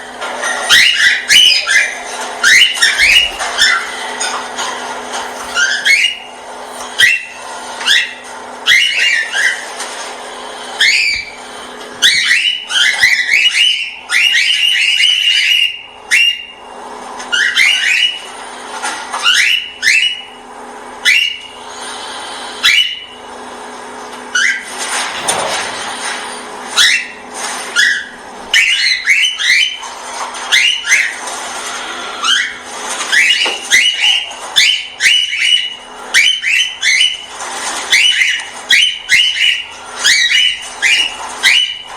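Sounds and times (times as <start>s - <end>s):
parrots whistling calls: 0.0s - 9.8s, 10.8s - 16.5s
parrot chatter: 0.0s - 13.6s.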